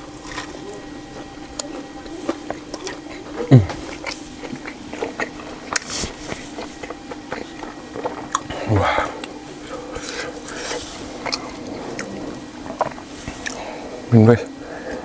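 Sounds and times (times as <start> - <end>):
chewing with wet mouth clicks: 0.0 - 15.0
steady low hum: 0.0 - 15.0
short falling vocal sound: 3.5 - 3.8.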